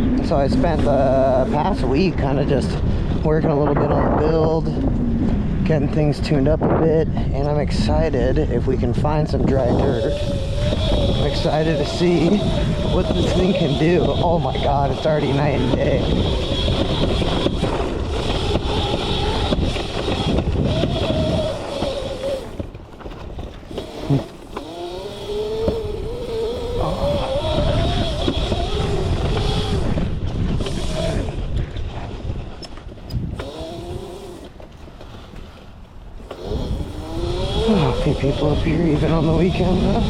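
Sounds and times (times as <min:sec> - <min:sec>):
electric motor whine: 0:00.0 - 0:02.5, 0:09.1 - 0:31.8, 0:32.6 - 0:34.7, 0:36.2 - 0:40.0.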